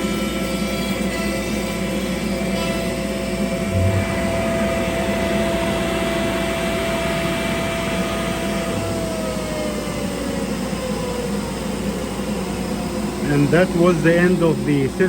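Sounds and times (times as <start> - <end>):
cnc machine running: 0.0 - 15.0
dust collector running: 1.6 - 15.0
motor spinning down: 3.4 - 15.0.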